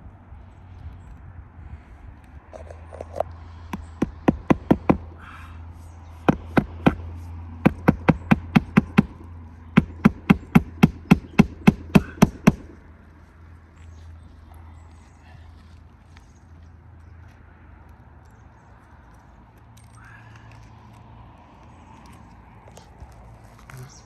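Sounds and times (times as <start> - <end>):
hammer striking roofing nails: 3.7 - 5.2, 6.2 - 7.0, 7.6 - 12.8.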